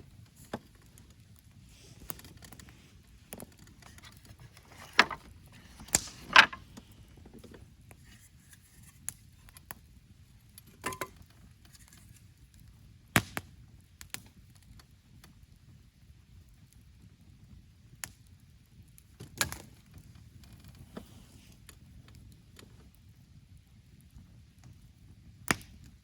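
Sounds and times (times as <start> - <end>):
sharp knocks and clicks: 4.7 - 6.6.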